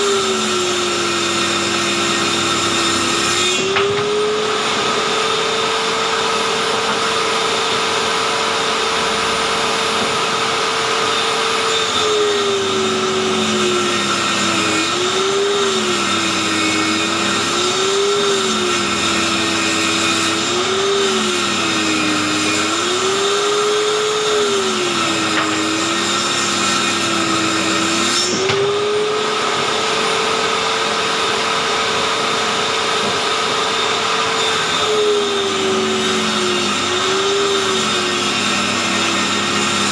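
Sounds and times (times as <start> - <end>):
circular saw cutting: 0.0 - 39.9.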